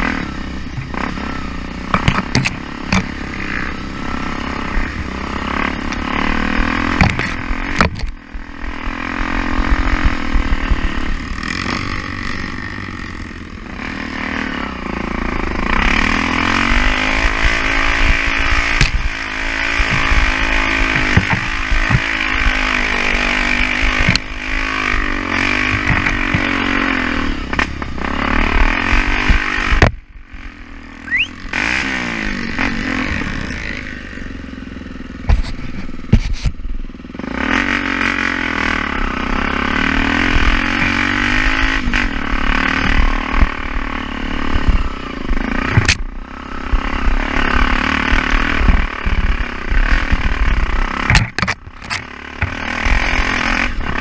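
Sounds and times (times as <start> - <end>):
motorcycle engine revving: 0.0 - 54.0
knocks and rattles: 19.8 - 22.2, 25.6 - 26.5.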